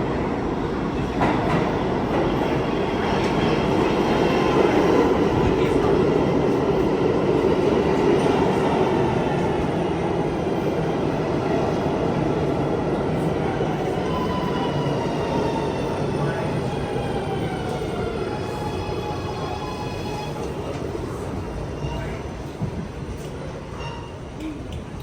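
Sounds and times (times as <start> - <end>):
subway train rumbling: 0.0 - 25.0.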